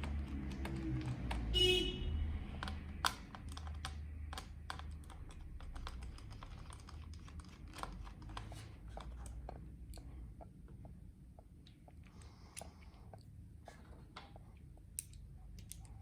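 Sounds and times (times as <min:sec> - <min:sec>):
plastic clicks and taps: 0:02.5 - 0:10.1.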